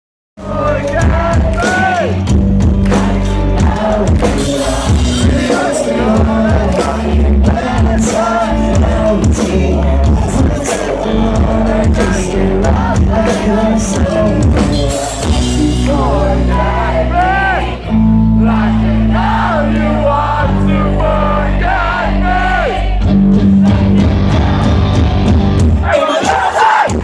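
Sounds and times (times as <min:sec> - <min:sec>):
pop-punk band playing live: 0:00.4 - 0:27.0
person singing: 0:02.9 - 0:22.8.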